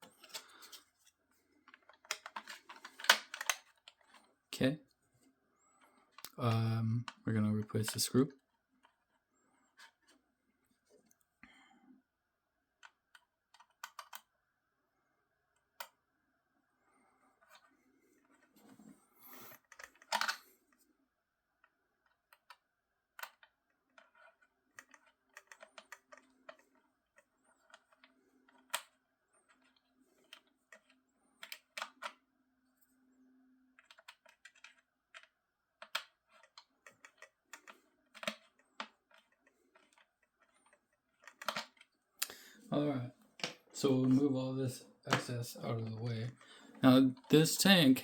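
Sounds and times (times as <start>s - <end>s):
screwdriver clicking on plastic toy: 1.8s - 4.2s, 13.6s - 14.3s, 19.6s - 20.4s, 33.8s - 41.9s.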